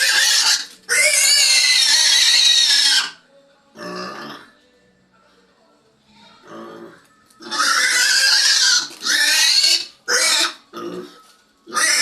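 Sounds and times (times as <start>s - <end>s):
piglet squealing: 0.0s - 3.2s, 6.6s - 12.0s.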